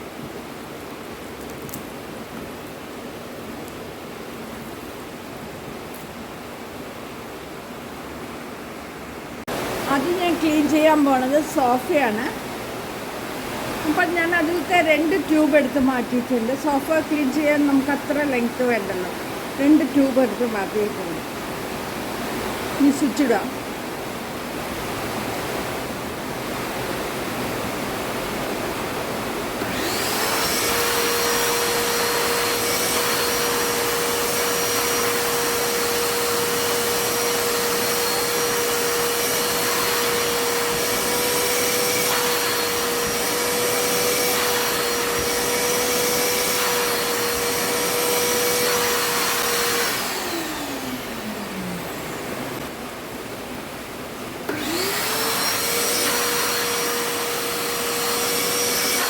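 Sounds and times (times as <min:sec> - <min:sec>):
vacuum cleaner motor whining: 0:29.5 - 0:52.9, 0:54.5 - 0:59.0.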